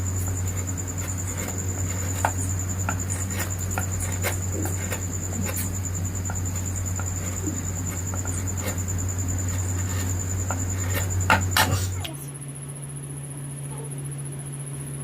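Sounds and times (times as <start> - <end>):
low electrical hum: 0.0 - 15.0
carving tool tapping wood: 0.2 - 11.8.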